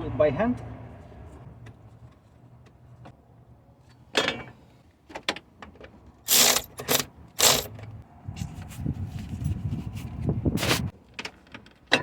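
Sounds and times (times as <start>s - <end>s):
ratchet clicks: 6.3s - 7.7s
rasping mechanical bursts: 6.3s - 7.8s.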